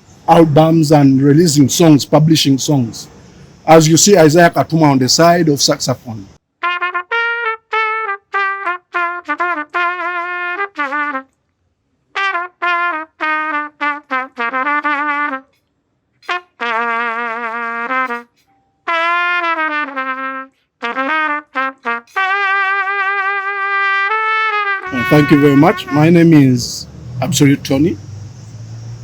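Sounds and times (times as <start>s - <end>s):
trumpet playing jazz: 6.0s - 11.3s, 12.2s - 15.6s, 16.2s - 27.8s.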